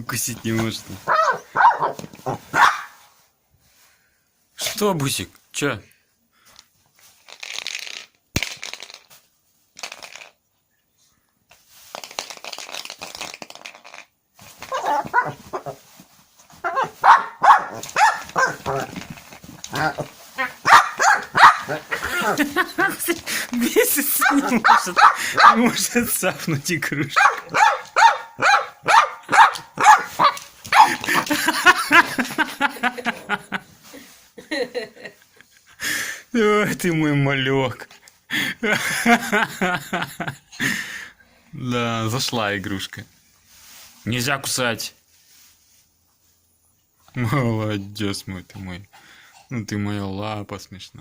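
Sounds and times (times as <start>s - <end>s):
puppy scuffling: 0.3s - 3.2s, 14.4s - 33.6s
puppy growling and yipping: 1.1s - 3.0s, 14.6s - 15.8s, 16.6s - 19.0s, 19.6s - 22.5s.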